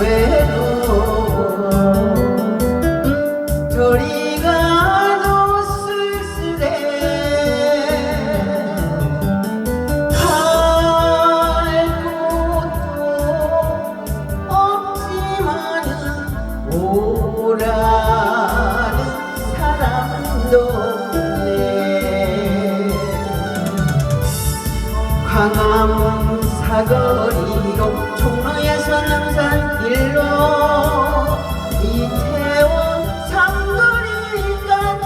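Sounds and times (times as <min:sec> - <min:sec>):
pop song with sliding melody: 0:00.0 - 0:35.0.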